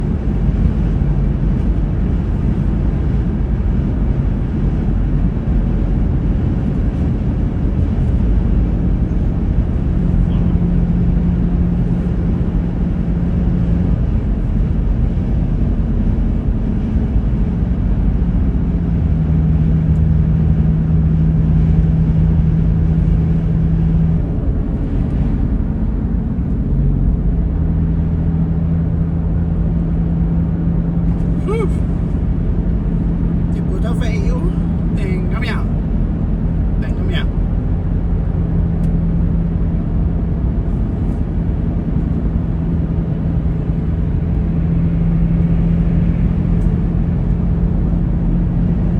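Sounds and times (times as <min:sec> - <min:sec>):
vehicle road and engine rumble: 0:00.0 - 0:48.9
steady hum: 0:30.2 - 0:37.4.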